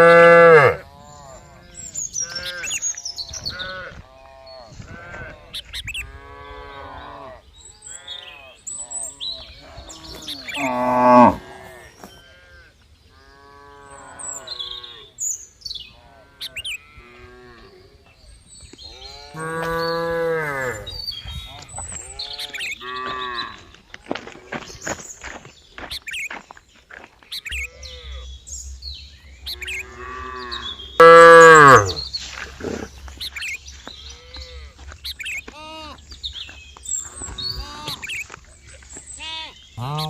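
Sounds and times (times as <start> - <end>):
cows mooing: 0.0 - 0.8, 9.9 - 11.7, 19.0 - 20.9, 29.5 - 32.9, 39.8 - 40.0.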